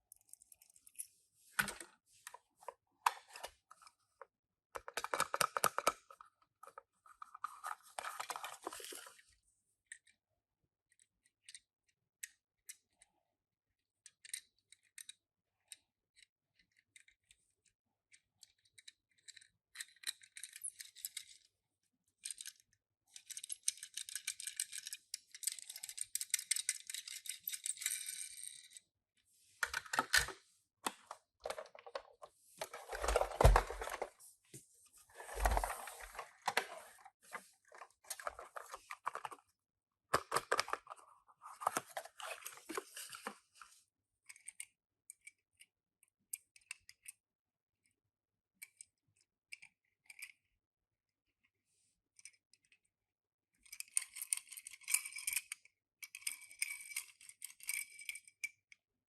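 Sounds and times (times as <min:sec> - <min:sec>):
toy cars clicking and rattling: 0:18.1 - 0:21.6, 0:22.2 - 0:28.9, 0:53.6 - 0:58.6
packaging rustling: 0:31.4 - 0:34.3, 0:35.1 - 0:39.4.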